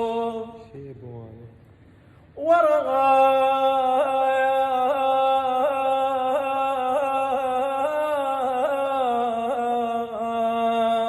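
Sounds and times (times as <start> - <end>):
man singing a sustained note: 2.4 - 11.0.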